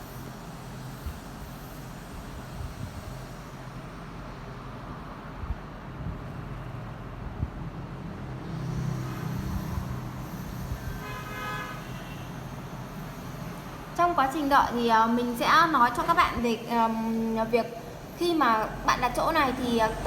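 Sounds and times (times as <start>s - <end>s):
road traffic rumble: 0.0s - 20.0s
faint horn-like tone: 10.6s - 12.6s.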